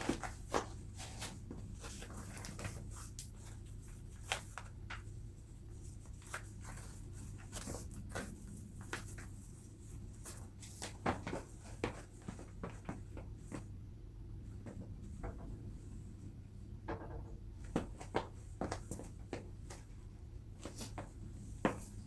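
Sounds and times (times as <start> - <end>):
sneakers clicking and rustling: 0.0 - 5.1, 10.1 - 13.8, 17.6 - 20.0, 20.6 - 22.0
low steady hum: 0.0 - 22.0.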